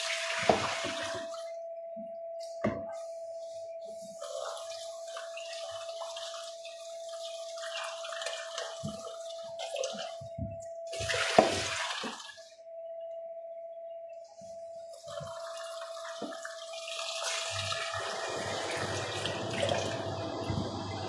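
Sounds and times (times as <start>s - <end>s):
steady hum: 8.8s - 21.0s
tap water running into sink: 15.2s - 20.9s.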